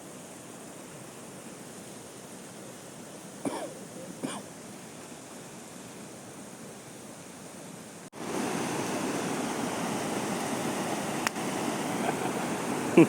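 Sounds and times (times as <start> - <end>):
waterfall rushing water: 0.0 - 13.0.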